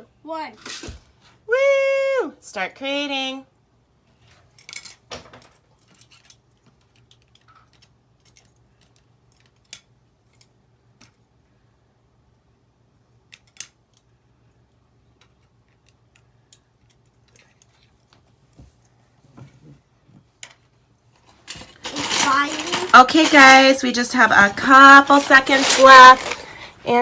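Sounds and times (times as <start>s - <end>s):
plastic bricks clicking and rattling: 21.5s - 23.6s, 25.1s - 26.6s.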